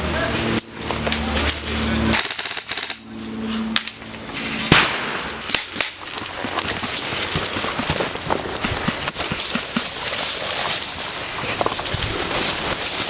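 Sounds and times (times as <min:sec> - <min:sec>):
airsoft gun burst: 0:02.1 - 0:03.0
loud sharp crack: 0:02.1 - 0:03.0, 0:03.8 - 0:06.0.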